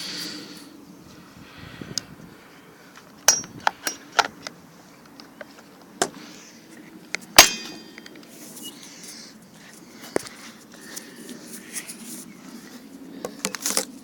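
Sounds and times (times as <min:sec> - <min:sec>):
metallic clang: 0:03.3 - 0:04.0, 0:07.4 - 0:08.0.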